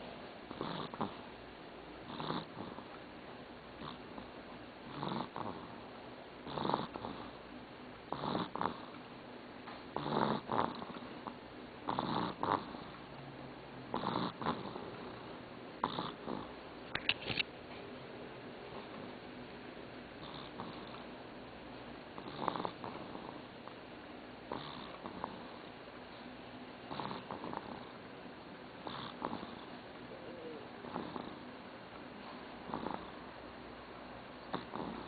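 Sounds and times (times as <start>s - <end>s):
pet snoring: 0.5s - 1.3s, 2.0s - 3.0s, 3.8s - 7.4s, 8.1s - 9.0s, 9.9s - 13.1s, 13.9s - 16.6s, 20.2s - 21.1s, 22.1s - 23.8s, 24.5s - 25.7s, 26.9s - 28.1s, 28.8s - 31.5s, 32.2s - 33.3s, 34.4s - 35.0s.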